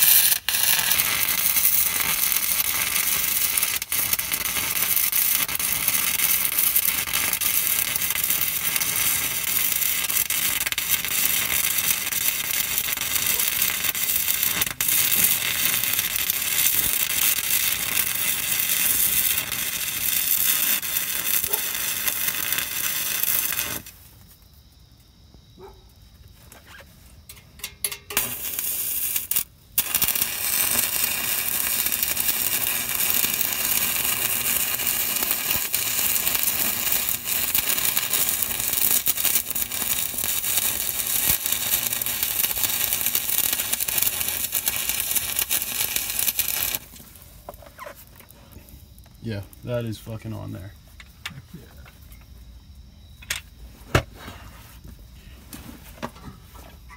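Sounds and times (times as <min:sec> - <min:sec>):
welding arc crackling: 0:00.0 - 0:24.0, 0:27.6 - 0:48.2.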